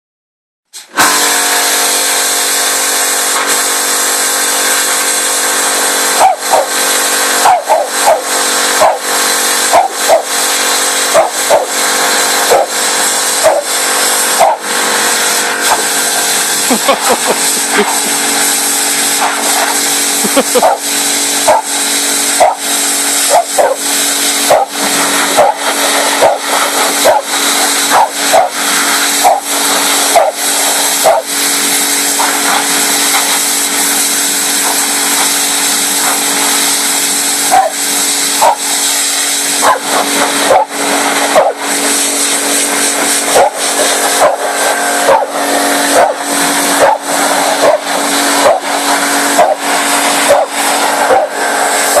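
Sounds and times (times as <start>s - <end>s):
pressure washer running: 0.7s - 52.0s
dog barking: 6.2s - 6.8s, 7.4s - 9.1s, 9.7s - 10.4s, 11.1s - 11.8s, 12.5s - 12.8s, 13.4s - 13.8s, 14.4s - 14.6s, 20.6s - 21.7s, 22.4s - 22.7s, 23.3s - 23.8s, 24.5s - 25.6s, 26.2s - 27.3s, 27.9s - 28.6s, 29.2s - 29.5s, 30.1s - 30.4s, 31.0s - 31.3s, 37.5s - 37.8s, 38.4s - 38.7s, 39.6s - 41.6s, 43.3s - 48.7s, 49.4s - 49.6s, 50.2s - 51.4s.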